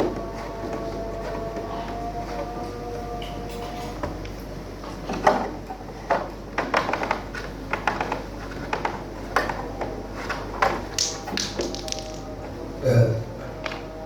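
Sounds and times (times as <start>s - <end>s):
hard objects knocking and clattering: 5.1s - 12.4s.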